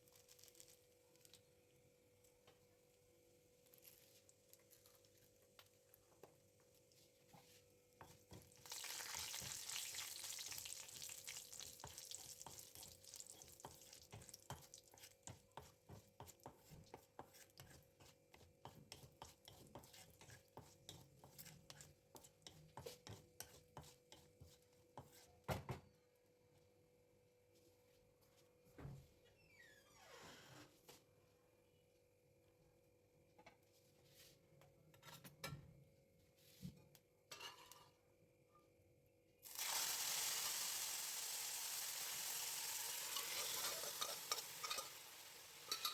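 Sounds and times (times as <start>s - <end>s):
sizzling in hot oil: 0.0s - 0.9s, 8.0s - 16.8s, 39.4s - 45.9s
utensil scraping pan: 16.2s - 24.2s, 43.0s - 45.9s.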